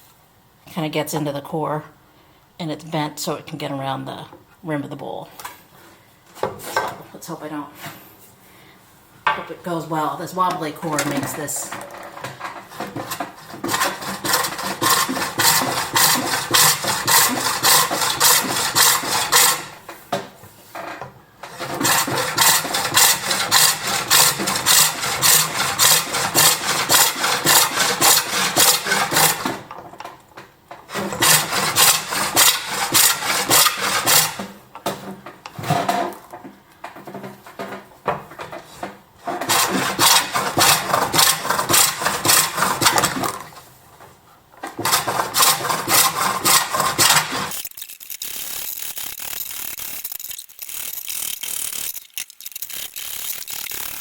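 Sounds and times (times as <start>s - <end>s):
tool rasping into spinning wood: 12.6s - 19.8s, 21.5s - 29.6s, 31.0s - 34.4s, 44.8s - 54.0s.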